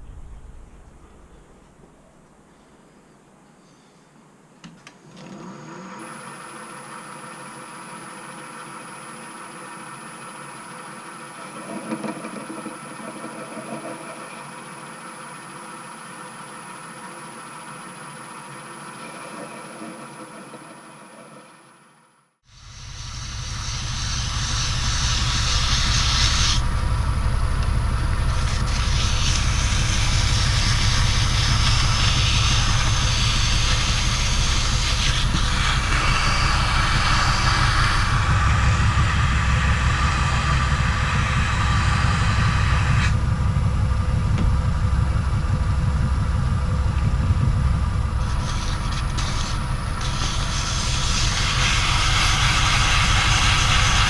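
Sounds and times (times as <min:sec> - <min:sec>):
lathe motor hum: 0:05.1 - 0:54.0
metal cutting hiss: 0:22.5 - 0:43.2, 0:48.2 - 0:54.0.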